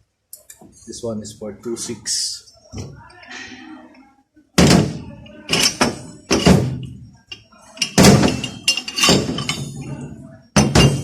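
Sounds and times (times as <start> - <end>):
metal parts clanking: 4.6 - 6.9, 7.7 - 11.0.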